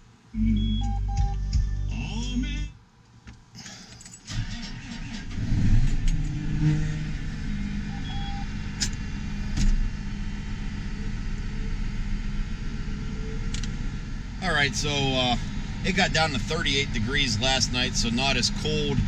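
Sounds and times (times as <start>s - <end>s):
tractor diesel engine starting and idling: 4.2s - 19.0s.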